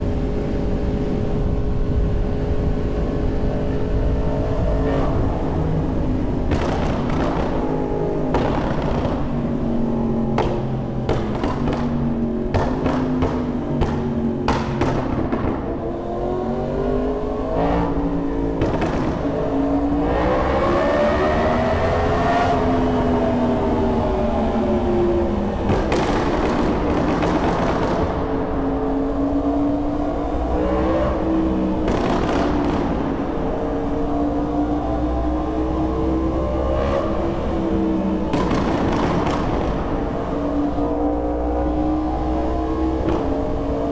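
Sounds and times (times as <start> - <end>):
motorcycle engine in tunnel: 0.0 - 43.9.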